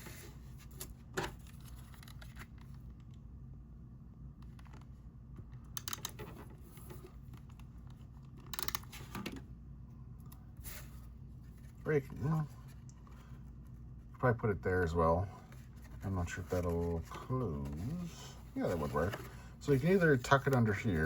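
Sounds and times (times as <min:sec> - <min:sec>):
paper rustling and scraping: 0:15.4 - 0:21.0.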